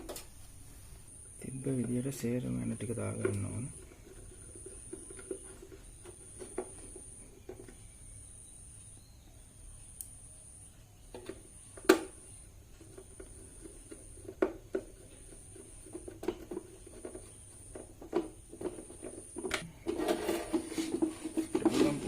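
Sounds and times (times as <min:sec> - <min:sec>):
plastic clicks and knocks: 0:03.1 - 0:03.6, 0:11.1 - 0:12.2.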